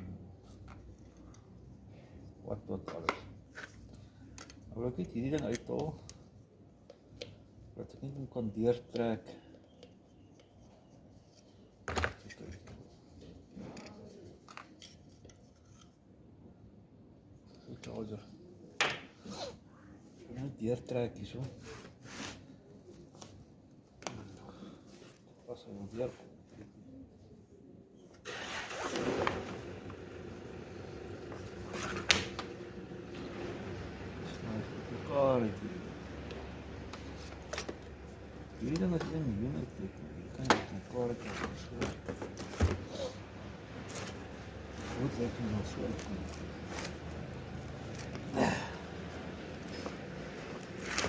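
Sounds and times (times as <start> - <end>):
parts scraping and rustling: 0.4 - 6.0, 9.7 - 16.2, 36.0 - 51.0.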